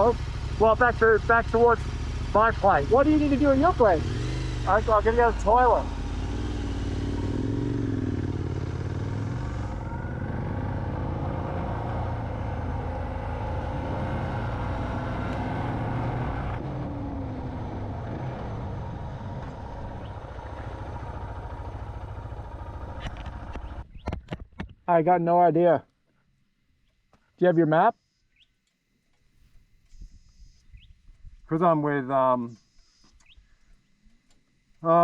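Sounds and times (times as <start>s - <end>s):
motorcycle engine running: 0.0s - 24.0s
road and wind noise: 0.0s - 24.8s.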